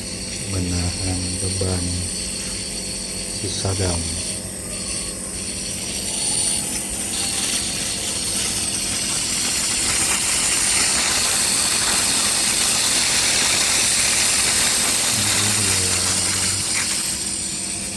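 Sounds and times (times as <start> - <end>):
nebulizer compressor running: 0.0 - 17.9
mist hissing: 6.9 - 17.9.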